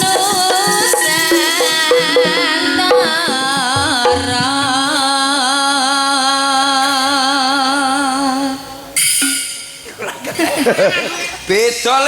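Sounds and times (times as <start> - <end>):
live band music: 0.0 - 5.0
drum strokes: 0.0 - 5.3.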